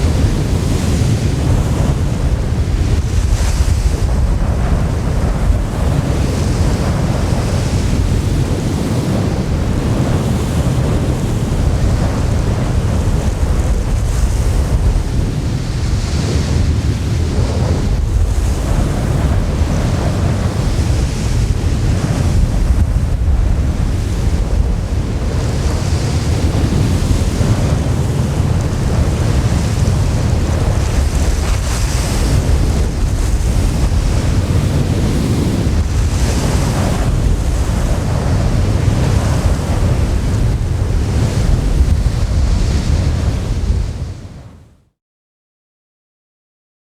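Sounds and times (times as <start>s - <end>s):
windstorm blowing hard: 0.0s - 44.9s.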